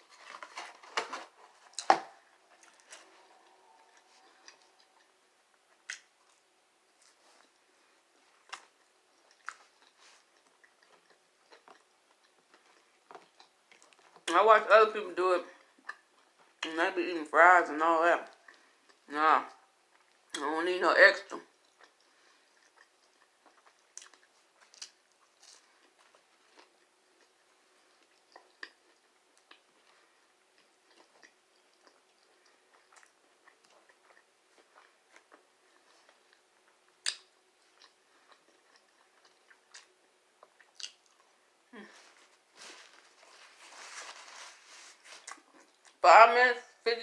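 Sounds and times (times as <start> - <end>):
person chewing food: 0.0 - 14.3, 15.6 - 16.6, 18.3 - 19.1, 19.8 - 20.4, 21.5 - 46.0.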